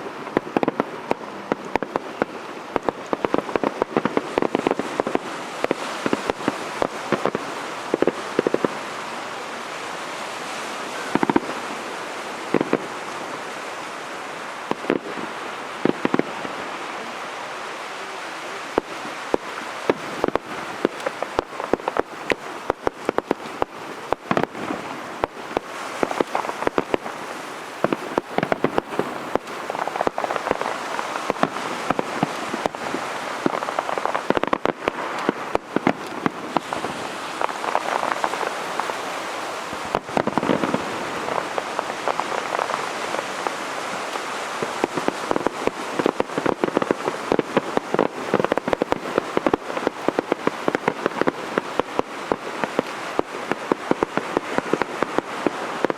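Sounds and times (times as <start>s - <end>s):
fireworks crackling: 0.0s - 55.9s
loud firework reports: 14.6s - 55.9s.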